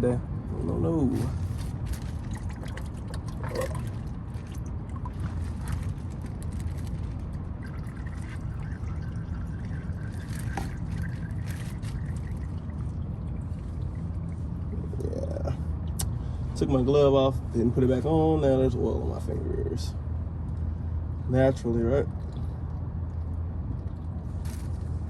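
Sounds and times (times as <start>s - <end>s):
steady low rumble: 0.0s - 25.0s
oil pouring and dribbling: 1.2s - 15.0s, 21.8s - 25.0s.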